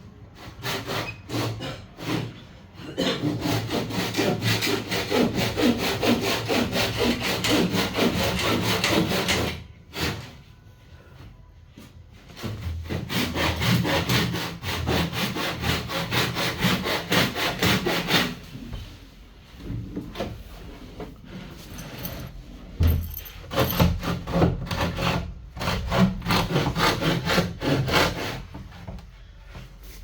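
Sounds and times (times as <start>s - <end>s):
handsaw cutting wood: 3.2s - 10.2s, 12.4s - 18.4s, 23.1s - 28.5s.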